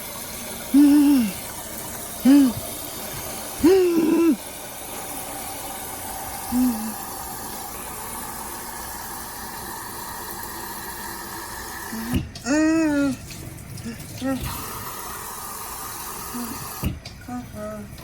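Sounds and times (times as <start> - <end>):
coffee maker hissing: 0.0 - 12.4, 14.4 - 17.2
short vocal sound: 0.8 - 1.4, 2.2 - 2.6, 3.6 - 4.4, 6.5 - 7.0.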